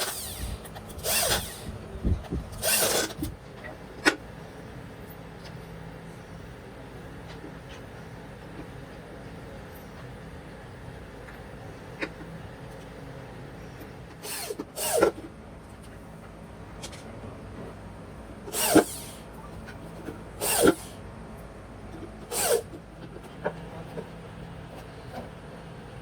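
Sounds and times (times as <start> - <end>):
power tool bursts: 0.0 - 1.7, 2.5 - 3.3, 14.2 - 15.2, 18.5 - 19.2, 20.4 - 21.0, 22.3 - 22.7.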